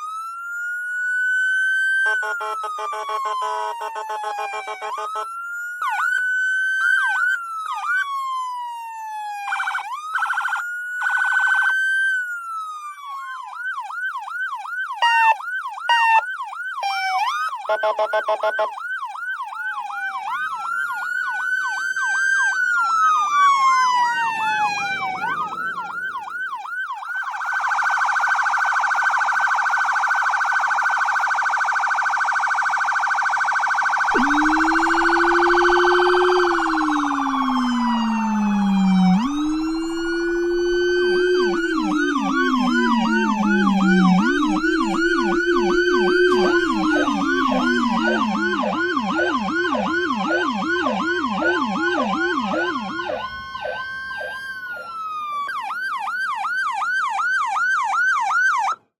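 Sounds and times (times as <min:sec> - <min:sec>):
low-pitched rumbler siren tone: 0:00.0 - 0:57.8
electronic siren wail: 0:00.0 - 0:58.8
fast siren yelp: 0:00.0 - 0:58.9
fast phaser siren warble: 0:21.8 - 0:55.5.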